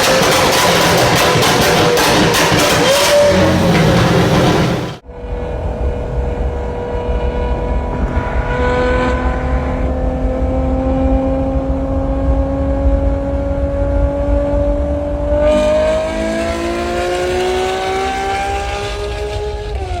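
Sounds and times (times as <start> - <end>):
car engine revving under load: 0.0 - 5.0, 5.6 - 20.0.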